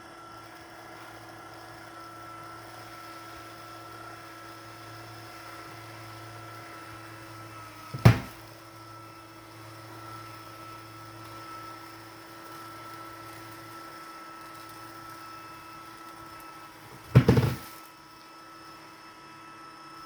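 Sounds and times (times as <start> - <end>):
litter box motor hum: 0.0 - 20.0
loud banging knocks: 8.0 - 8.4, 17.0 - 17.7.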